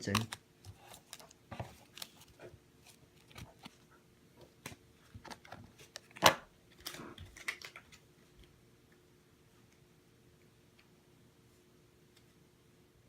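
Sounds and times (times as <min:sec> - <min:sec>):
cards clicking and rustling: 0:00.0 - 0:03.8, 0:04.6 - 0:08.1.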